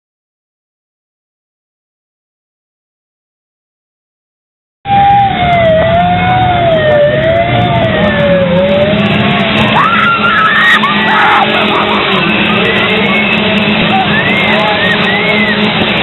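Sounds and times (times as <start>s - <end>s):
chainsaw engines droning: 4.9s - 16.0s
high rising screams: 4.9s - 16.0s
wailing siren tone: 4.9s - 16.0s.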